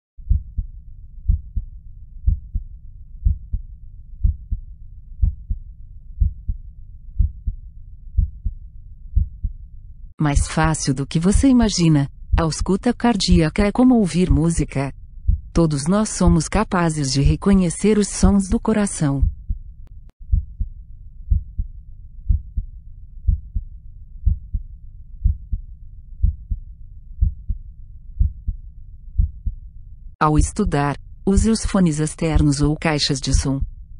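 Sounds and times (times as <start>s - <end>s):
heartbeat through stethoscope: 0.2s - 9.6s, 11.3s - 12.7s, 15.2s - 15.6s, 19.1s - 29.6s
faint low rumble: 0.2s - 33.9s.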